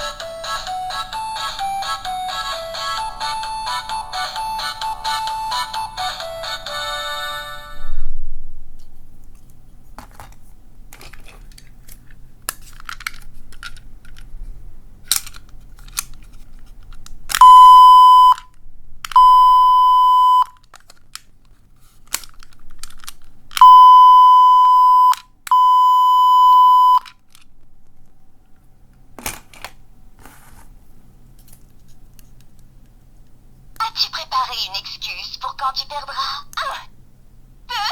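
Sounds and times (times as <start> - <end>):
loud electronic beeps: 23.6 - 27.0.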